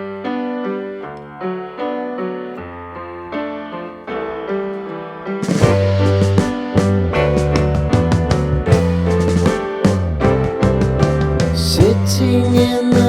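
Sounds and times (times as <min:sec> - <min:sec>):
electric piano chords: 0:00.0 - 0:13.0
drum fill: 0:05.4 - 0:13.0.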